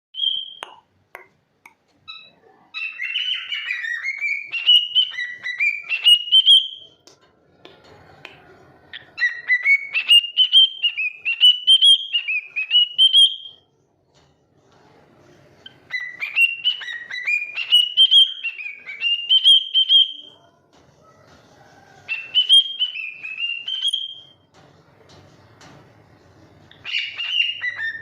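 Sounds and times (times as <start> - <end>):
cockatiel chirps: 2.1 - 6.8, 9.0 - 13.6, 15.6 - 20.3, 22.1 - 24.3, 26.7 - 28.0.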